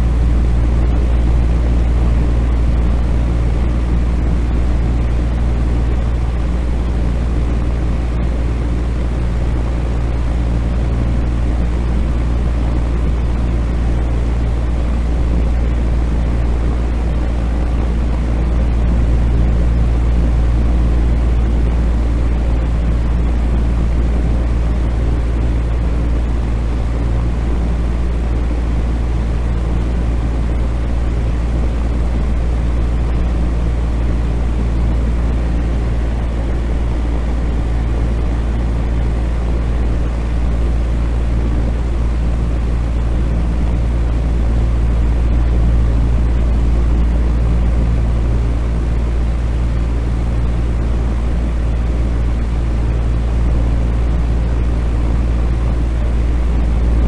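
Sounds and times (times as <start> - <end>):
electric fan running: 0.0 - 57.0.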